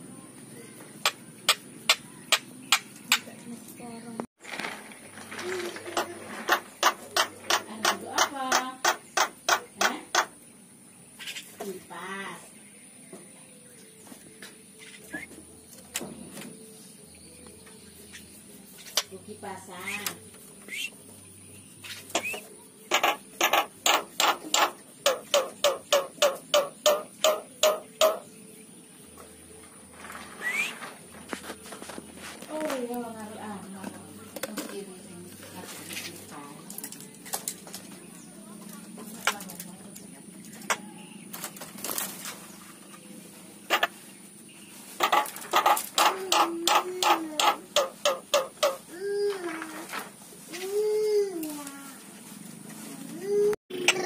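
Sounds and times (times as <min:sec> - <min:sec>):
bird making sharp clicks: 0:01.0 - 0:03.3, 0:06.5 - 0:10.4, 0:22.1 - 0:28.2, 0:40.6 - 0:40.8, 0:45.0 - 0:48.8.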